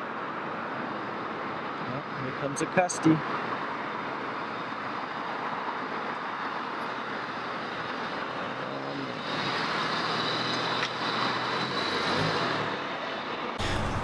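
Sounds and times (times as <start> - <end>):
car engine: 3.1 - 14.0.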